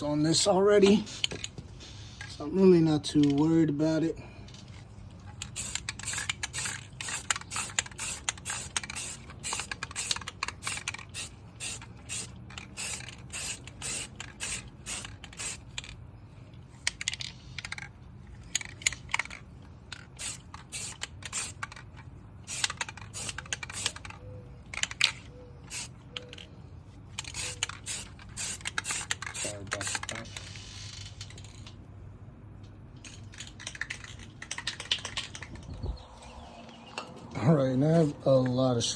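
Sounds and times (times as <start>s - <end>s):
spray paint can hissing bursts: 5.4s - 15.8s, 20.2s - 21.8s, 22.5s - 24.2s, 25.7s - 26.0s, 27.2s - 31.2s.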